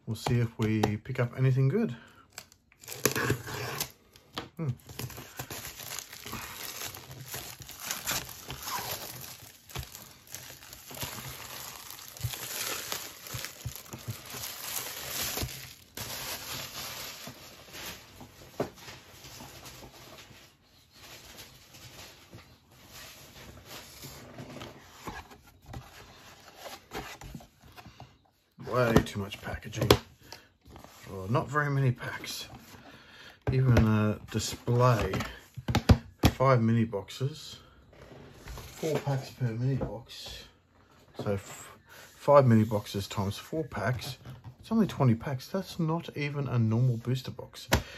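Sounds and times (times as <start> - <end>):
packaging torn and crinkled: 2.3 - 3.9, 4.9 - 17.4.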